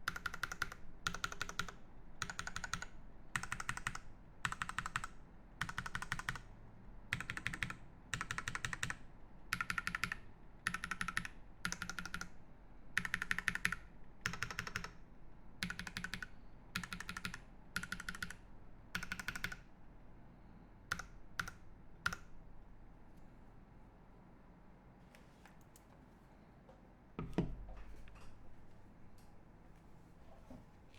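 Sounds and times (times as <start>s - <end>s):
typing on a mechanical keyboard: 0.0s - 6.5s, 7.1s - 12.4s, 13.0s - 15.0s, 15.6s - 18.4s, 19.0s - 19.7s, 20.9s - 22.3s.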